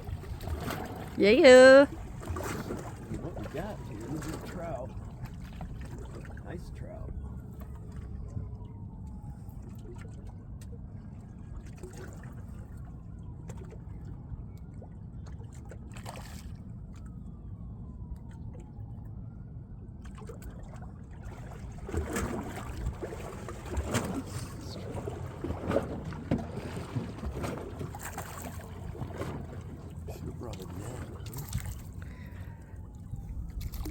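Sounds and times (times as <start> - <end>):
splashes and knocks: 0.0 - 6.4, 14.7 - 17.2, 20.0 - 32.7, 33.4 - 33.9
water lapping against boat: 0.0 - 33.9
steady low rumble: 28.5 - 33.9.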